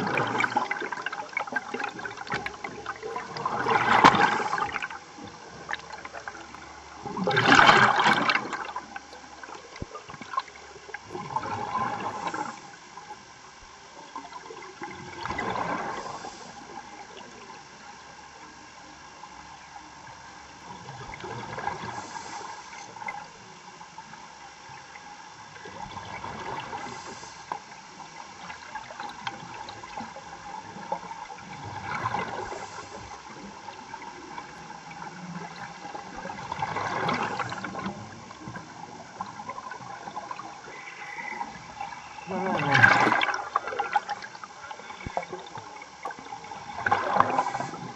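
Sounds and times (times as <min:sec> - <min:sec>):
exhaled bubbles gurgling: 0:00.0 - 0:47.9
diver breathing underwater: 0:03.4 - 0:05.0, 0:11.5 - 0:12.8, 0:15.5 - 0:17.1, 0:21.7 - 0:23.0, 0:26.6 - 0:27.7, 0:32.1 - 0:33.3, 0:46.6 - 0:47.9.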